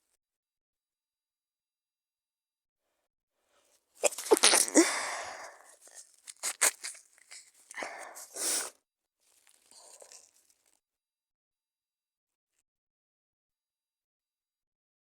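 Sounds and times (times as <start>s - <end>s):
person stifling a sneeze: 4.0s - 5.7s, 7.8s - 8.7s.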